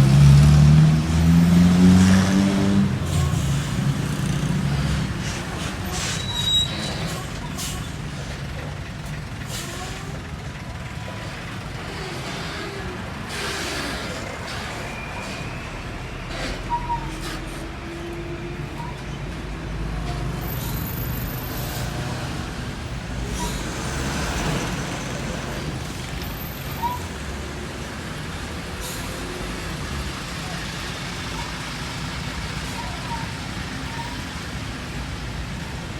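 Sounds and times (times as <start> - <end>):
diesel trucks passing: 0.0 - 35.9
air brakes hissing: 3.0 - 8.4, 9.3 - 10.3, 11.9 - 17.8, 23.1 - 25.3, 28.6 - 30.6.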